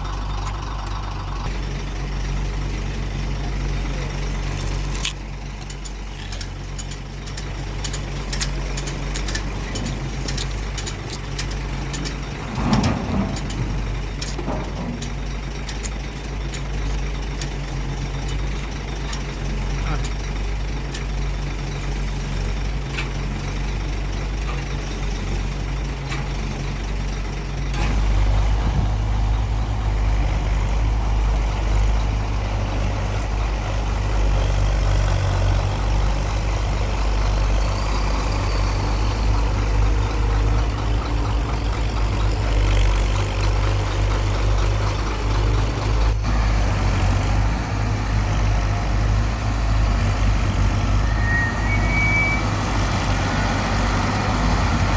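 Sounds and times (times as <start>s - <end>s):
heavy machinery engine running: 0.0s - 54.9s.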